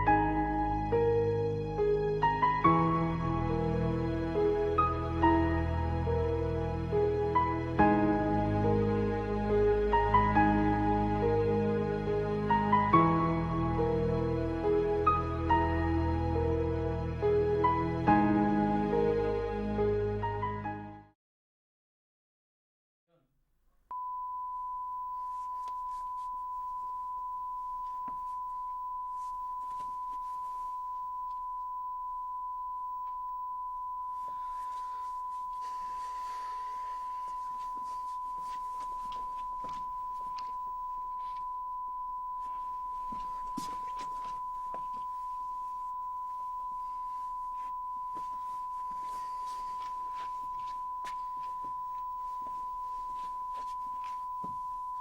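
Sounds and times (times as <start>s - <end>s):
electronic test tone: 23.9s - 55.0s.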